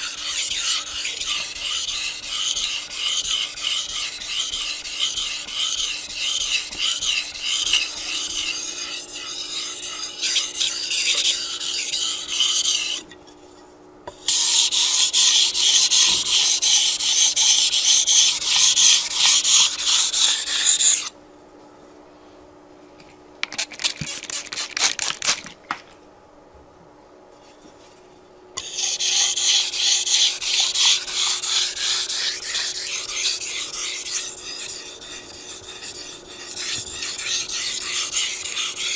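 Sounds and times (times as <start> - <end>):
knife scraping on whetstone: 0.0 - 13.4, 14.2 - 21.1, 28.6 - 38.9.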